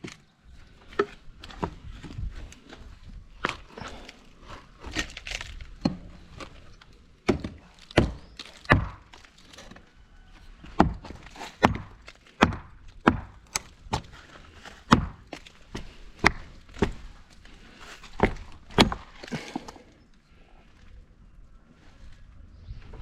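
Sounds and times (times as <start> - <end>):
tool knocking timber boards: 7.3 - 9.1, 10.6 - 14.0, 14.9 - 17.0.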